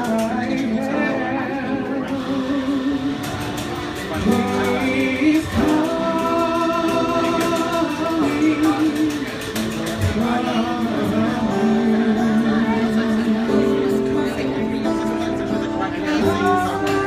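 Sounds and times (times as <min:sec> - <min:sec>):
guitar accompaniment: 0:00.0 - 0:17.0
person singing gospel song: 0:04.1 - 0:14.0.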